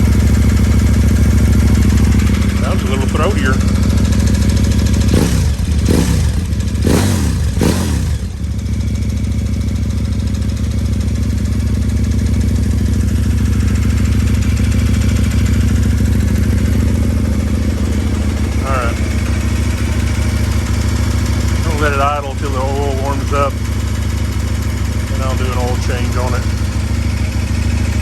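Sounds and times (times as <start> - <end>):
motorcycle engine revving and idling: 0.0 - 28.0.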